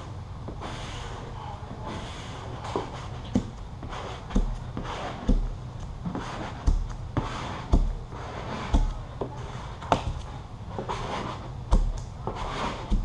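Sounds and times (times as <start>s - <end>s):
dull thumps: 2.7s - 13.0s
squeegee swishing strokes: 6.0s - 13.0s.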